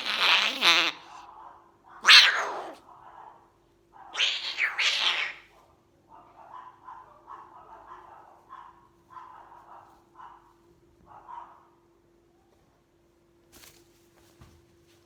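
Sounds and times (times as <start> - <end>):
cockatoo hissing screeches: 0.0 - 1.2, 2.0 - 2.8, 4.2 - 5.5.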